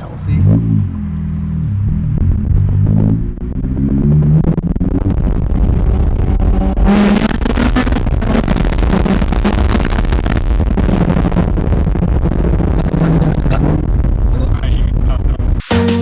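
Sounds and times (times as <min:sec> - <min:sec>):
loud car engine pulling away: 0:00.0 - 0:09.9.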